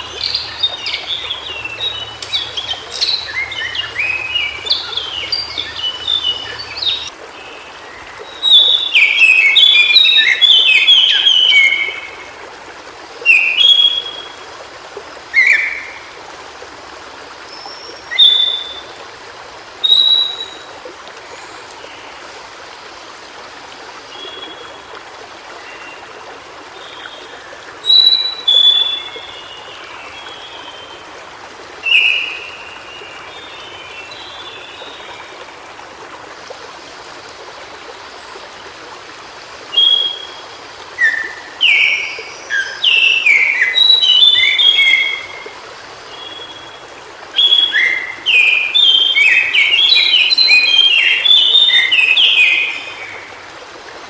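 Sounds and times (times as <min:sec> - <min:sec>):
bird singing warbled phrases: 0:00.0 - 0:07.1, 0:47.4 - 0:53.2
stream rushing: 0:00.0 - 0:54.0.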